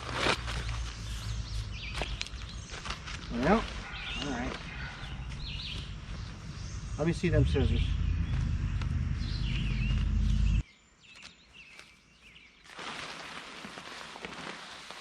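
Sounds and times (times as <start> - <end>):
small birds chirping: 0.5 - 12.7
wind buffeting microphone: 5.4 - 10.6.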